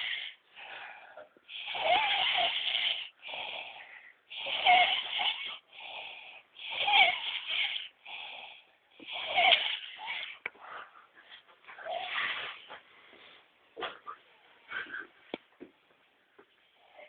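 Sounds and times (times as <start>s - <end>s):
pet snoring loudly: 0.0s - 0.4s, 1.5s - 10.4s
soft breaths: 0.0s - 17.0s.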